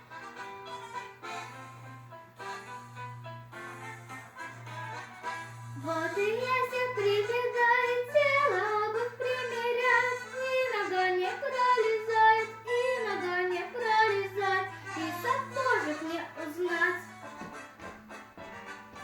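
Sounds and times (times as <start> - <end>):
musical accompaniment: 0.0 - 19.0
girl singing: 5.8 - 17.1.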